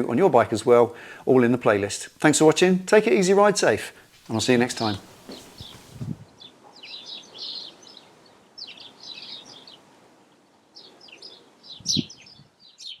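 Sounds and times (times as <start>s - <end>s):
small birds chirping: 4.0s - 13.0s.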